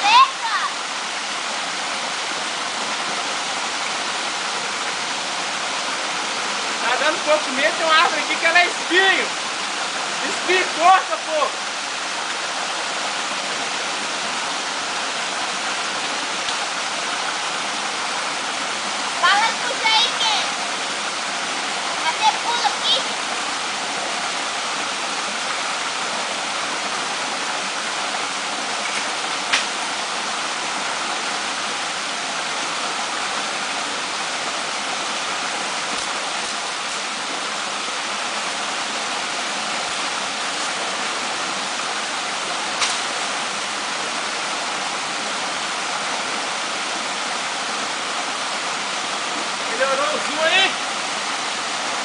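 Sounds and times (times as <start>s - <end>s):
waterfall rushing into pool: 0.0s - 52.0s.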